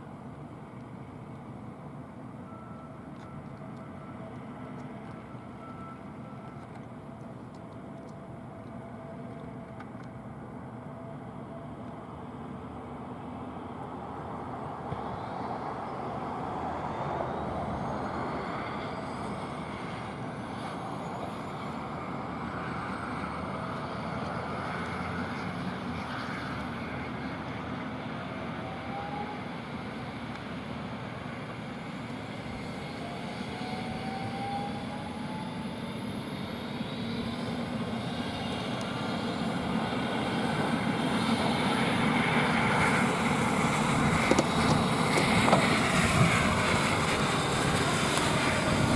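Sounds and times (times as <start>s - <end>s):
helicopter turbine whine: 27.9s - 48.9s.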